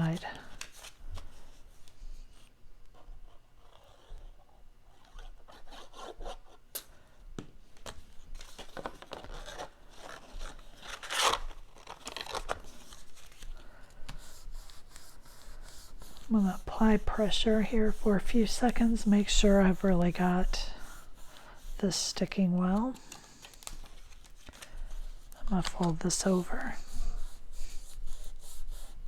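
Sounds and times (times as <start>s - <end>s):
paper rustling: 7.7s - 27.9s
paper scraping: 8.4s - 28.9s.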